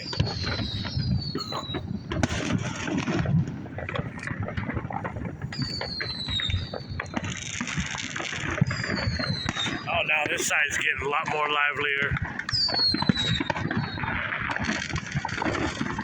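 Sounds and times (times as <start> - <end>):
distant fireworks popping and crackling: 0.0 - 16.0
firework whistle falling in pitch: 5.5 - 7.0, 12.5 - 14.0.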